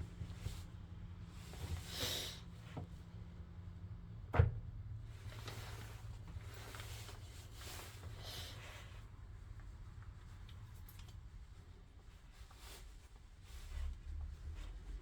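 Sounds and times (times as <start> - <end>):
rustle or scrape of handling: 5.3 - 9.0, 12.1 - 15.0.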